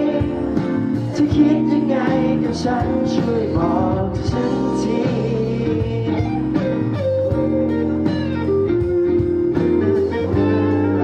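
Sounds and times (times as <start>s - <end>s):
guitar melody: 0.0s - 11.0s
live band playing pop ballad: 0.0s - 11.0s.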